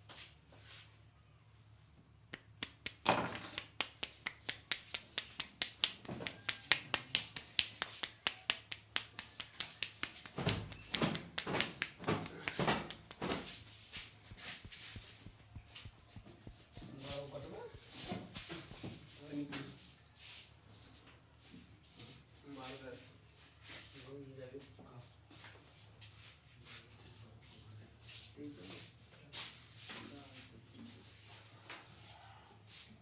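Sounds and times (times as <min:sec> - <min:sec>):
hands tapping on head: 0:02.3 - 0:18.5.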